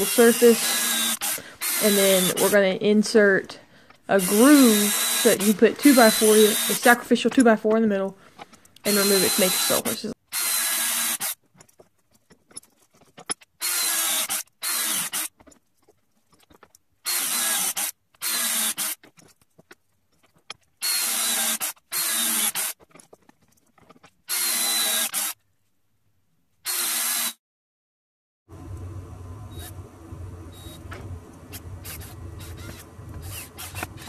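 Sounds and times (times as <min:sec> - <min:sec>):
handheld power tool bursts: 0:00.0 - 0:02.8, 0:03.8 - 0:07.6, 0:08.4 - 0:11.4, 0:13.6 - 0:15.3, 0:17.0 - 0:19.0, 0:20.8 - 0:22.8, 0:24.3 - 0:25.4, 0:30.6 - 0:34.0.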